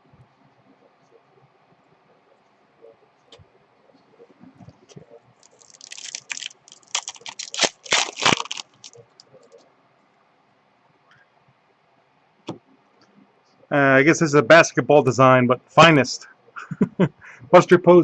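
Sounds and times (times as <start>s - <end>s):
foil wrappers crinkling: 5.4s - 9.2s.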